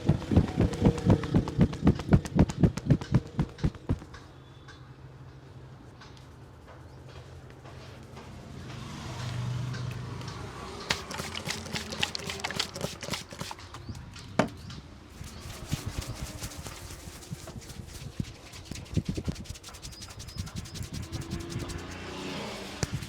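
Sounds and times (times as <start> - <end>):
hands tapping on scalp: 0.0 - 4.1, 15.2 - 23.0.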